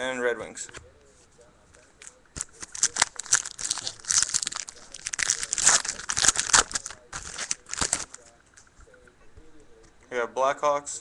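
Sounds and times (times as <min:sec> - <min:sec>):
wrapper crinkling and tearing: 0:02.0 - 0:08.2.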